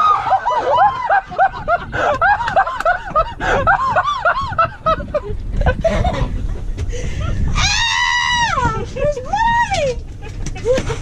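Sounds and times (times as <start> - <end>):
woman laughing hard: 0.1 - 6.5.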